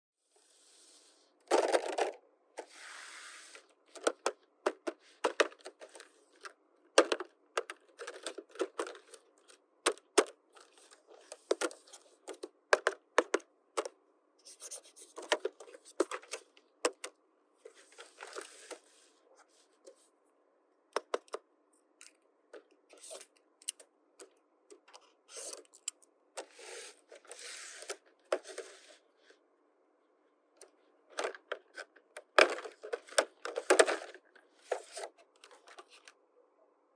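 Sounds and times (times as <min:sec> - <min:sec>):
plastic pieces clicking and tapping: 0:03.9 - 0:14.0, 0:15.2 - 0:17.2, 0:20.9 - 0:21.4.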